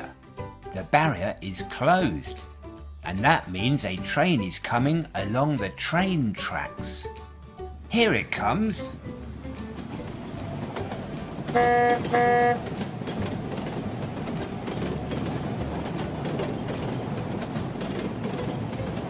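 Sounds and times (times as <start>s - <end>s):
train rumbling over tracks: 0.0s - 19.0s
train horn toots: 11.5s - 12.8s.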